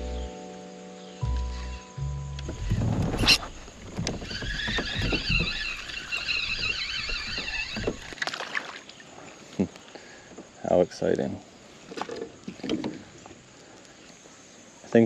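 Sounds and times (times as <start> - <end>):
kayak knocking: 2.4 - 8.8, 11.9 - 13.1
water sloshing: 2.5 - 10.2.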